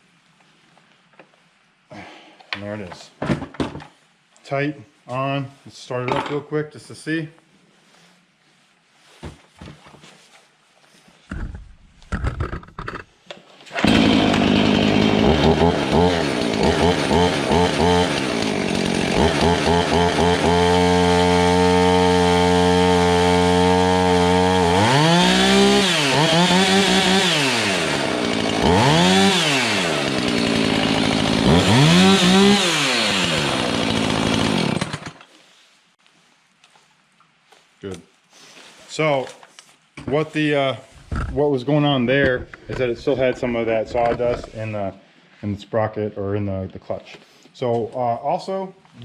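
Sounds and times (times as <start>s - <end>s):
chainsaw starting idling and revving: 13.7s - 35.3s.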